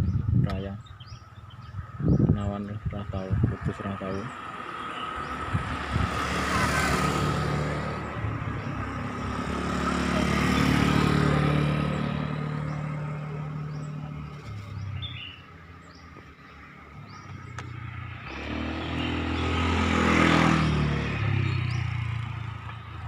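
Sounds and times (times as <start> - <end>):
vehicle traffic passing: 3.0 - 23.0.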